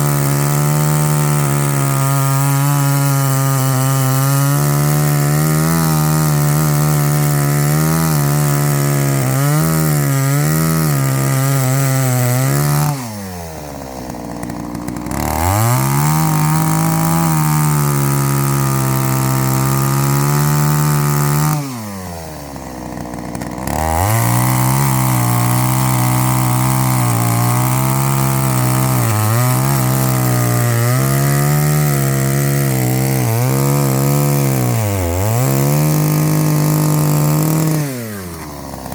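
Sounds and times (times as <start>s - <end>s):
chainsaw cutting wood: 0.0s - 38.9s.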